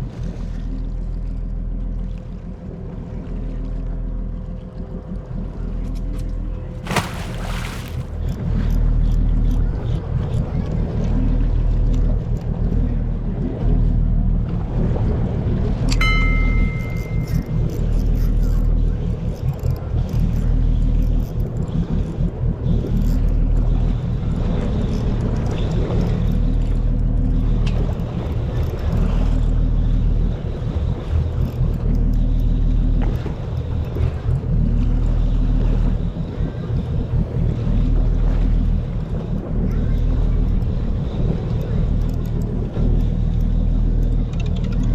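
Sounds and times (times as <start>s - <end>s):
boat engine rumble: 0.1s - 44.9s
boat engine humming: 6.9s - 8.4s, 37.3s - 44.9s.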